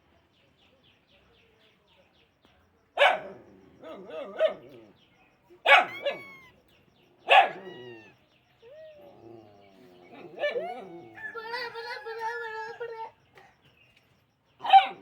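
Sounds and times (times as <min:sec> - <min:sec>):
dog barking: 0:03.0 - 0:04.8, 0:05.6 - 0:06.3, 0:07.3 - 0:07.7, 0:10.3 - 0:11.0, 0:14.6 - 0:15.0.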